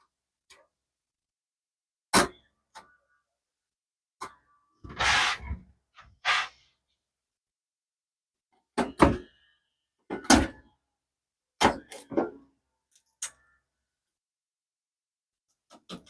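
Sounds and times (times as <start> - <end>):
knocks of tools set down: 11.6 - 12.4.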